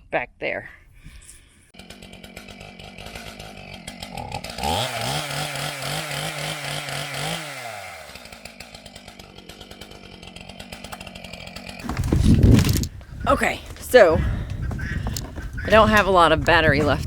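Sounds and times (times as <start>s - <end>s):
chainsaw idling and revving: 1.8s - 14.1s.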